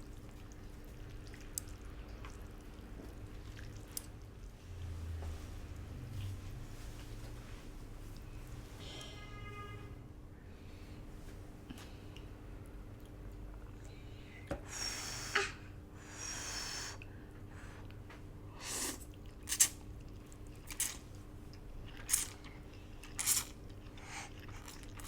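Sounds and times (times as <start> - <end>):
slurping noodles: 21.9 - 25.0.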